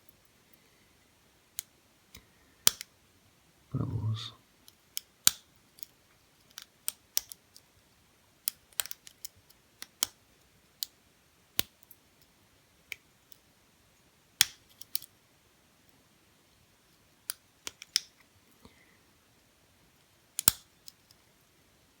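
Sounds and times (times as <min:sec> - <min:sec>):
lock pick clicking in padlock: 0:20.4 - 0:21.0.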